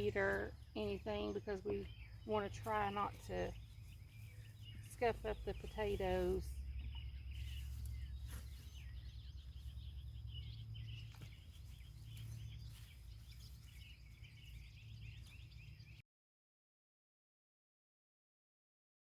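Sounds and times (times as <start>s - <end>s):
steady low rumble: 0.0s - 15.9s
birds chirping: 0.0s - 16.0s.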